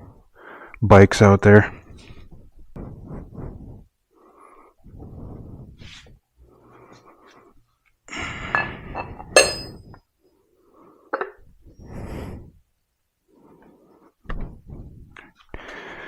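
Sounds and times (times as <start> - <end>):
metal tools knocking and clinking: 8.6 - 9.8.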